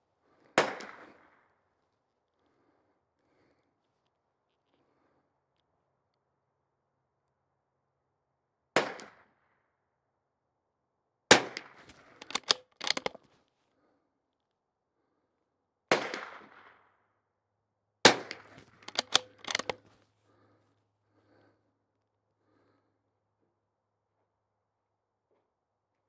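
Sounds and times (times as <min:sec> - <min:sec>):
rifle bolt clicking: 0:11.9 - 0:13.2, 0:18.6 - 0:19.8
rifle shots: 0:12.2 - 0:13.2, 0:18.1 - 0:19.8.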